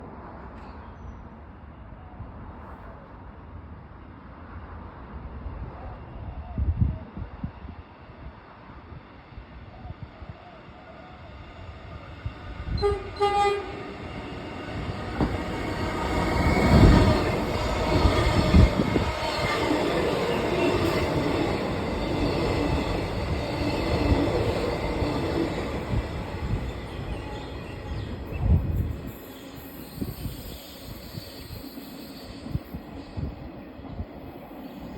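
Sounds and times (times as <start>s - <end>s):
train wheels rumbling on rails: 11.3s - 34.9s
train horn toots: 12.7s - 15.3s.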